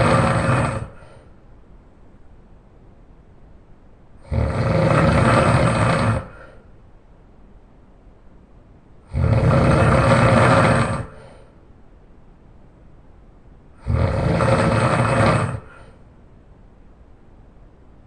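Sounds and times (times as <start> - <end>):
person snoring loudly: 0.0 - 1.3, 4.2 - 6.6, 9.1 - 11.5, 13.8 - 16.0.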